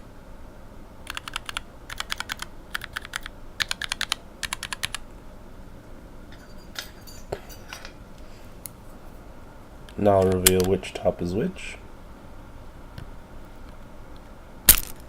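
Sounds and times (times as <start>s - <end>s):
mechanical keyboard clacking: 1.1s - 5.0s, 10.2s - 10.8s.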